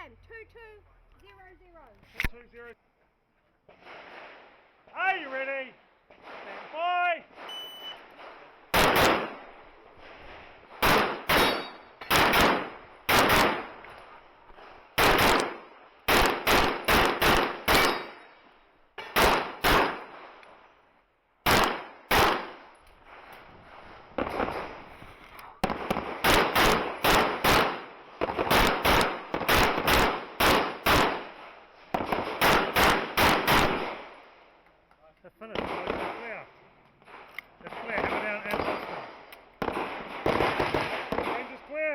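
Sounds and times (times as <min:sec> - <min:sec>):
handgun shots: 0:08.8 - 0:09.3, 0:10.8 - 0:13.7, 0:15.0 - 0:18.2.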